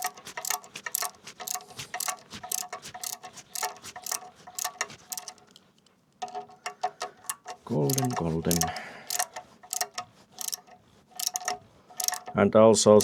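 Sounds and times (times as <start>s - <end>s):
hand ratchet clicking: 0.0s - 13.0s.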